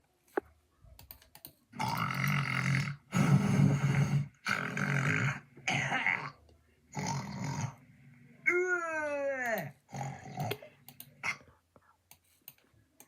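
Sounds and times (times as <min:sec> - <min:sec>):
person snoring loudly: 0:01.8 - 0:07.8, 0:09.9 - 0:10.6
faint clicks: 0:10.4 - 0:11.1.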